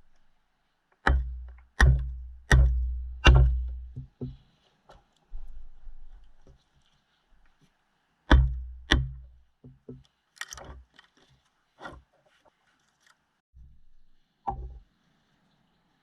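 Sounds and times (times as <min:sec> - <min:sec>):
knife chopping into wood: 0:01.1 - 0:04.4, 0:08.3 - 0:10.0.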